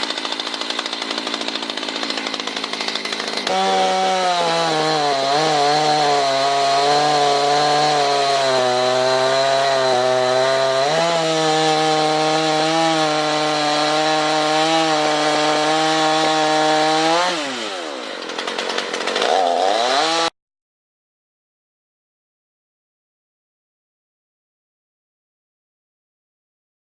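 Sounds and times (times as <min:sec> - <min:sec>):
chainsaw engine revving: 0:00.0 - 0:20.3.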